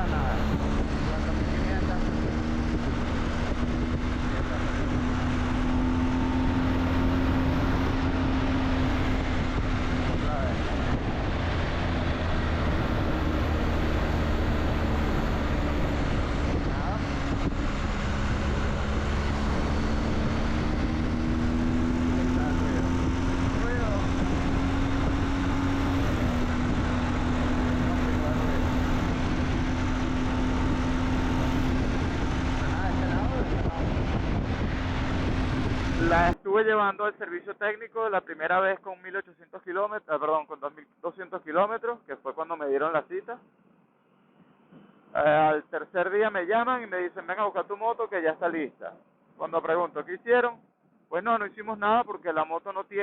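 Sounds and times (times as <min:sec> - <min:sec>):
motorcycle engine running: 0:00.0 - 0:36.3
wind noise: 0:00.0 - 0:36.4
road noise: 0:00.0 - 0:36.5.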